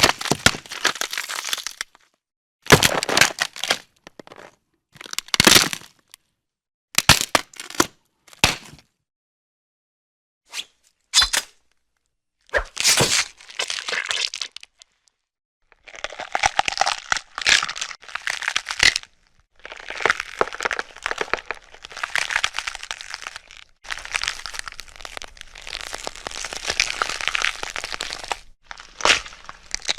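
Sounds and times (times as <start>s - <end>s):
bones breaking cracks: 0.0s - 2.0s, 2.7s - 6.2s, 7.0s - 8.8s, 15.8s - 29.9s
crunching and breaking: 0.0s - 2.1s, 2.7s - 6.2s, 7.0s - 8.9s, 15.7s - 29.9s.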